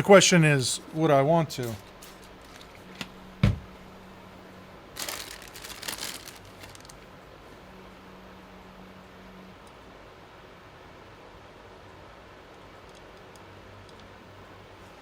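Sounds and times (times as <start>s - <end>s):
faint steady hum: 0.0s - 15.0s
crinkly rustling: 1.7s - 3.0s, 4.9s - 7.1s.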